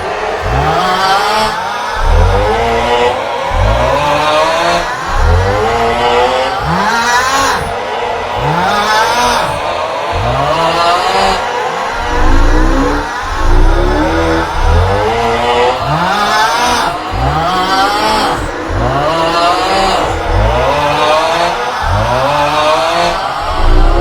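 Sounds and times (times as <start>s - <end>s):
heavy low bass: 2.0s - 8.7s, 9.3s - 24.0s
man groaning vocalisation: 12.0s - 20.8s.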